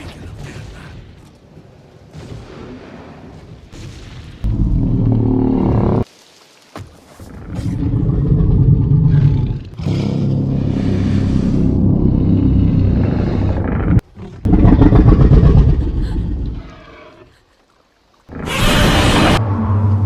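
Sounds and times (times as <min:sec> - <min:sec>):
deep rough monster growls: 0:07.3 - 0:16.7.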